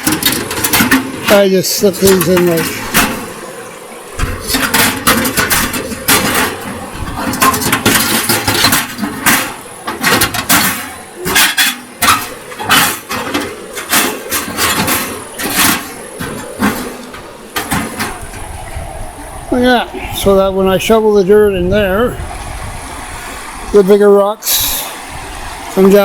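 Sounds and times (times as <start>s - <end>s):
metal parts clanking into place: 4.2s - 18.2s.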